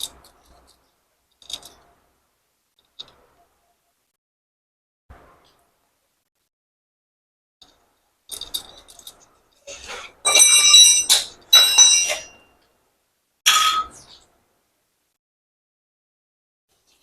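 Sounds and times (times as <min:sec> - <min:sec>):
metal parts clinking and ringing: 0:00.0 - 0:01.9, 0:08.3 - 0:09.6, 0:10.2 - 0:12.6.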